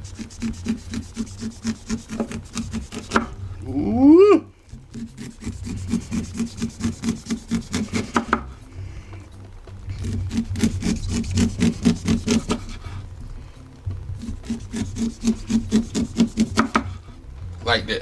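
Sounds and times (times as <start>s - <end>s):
knife scraping corn cob: 0.0s - 3.4s, 4.8s - 8.6s, 9.9s - 13.0s, 14.2s - 17.1s.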